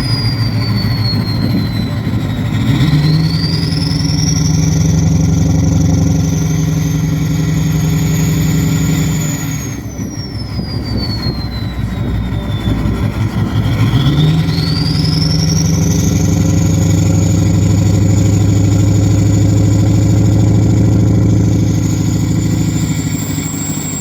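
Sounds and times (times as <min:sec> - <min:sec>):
diesel engine revving: 0:00.0 - 0:24.0
turbo whistle: 0:00.0 - 0:24.0.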